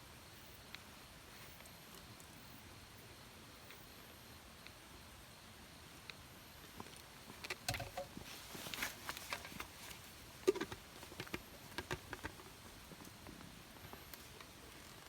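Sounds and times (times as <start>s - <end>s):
small clicks and knocks: 6.8s - 15.0s
rustling: 7.3s - 15.0s.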